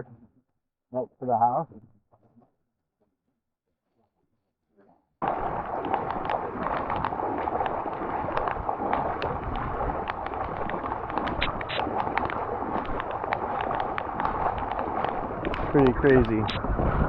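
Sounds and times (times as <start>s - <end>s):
sharp ticks of raindrops: 5.2s - 16.8s
heavy rain on floodwater: 5.2s - 17.0s.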